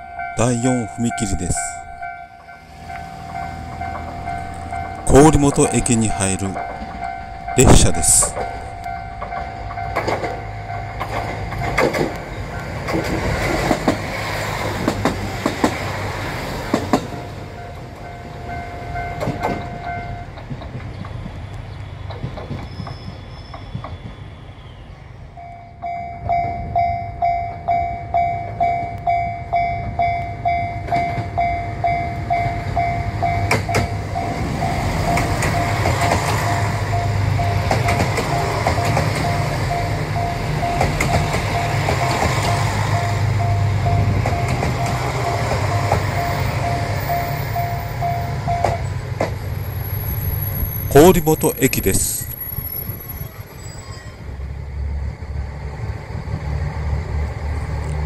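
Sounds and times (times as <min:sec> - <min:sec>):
level crossing warning bell: 0:00.0 - 0:13.6, 0:17.1 - 0:20.5, 0:25.3 - 0:49.1
train rumble: 0:00.0 - 0:58.0
train wheels clicking over joints: 0:02.4 - 0:17.2, 0:18.8 - 0:24.4, 0:29.8 - 0:49.6.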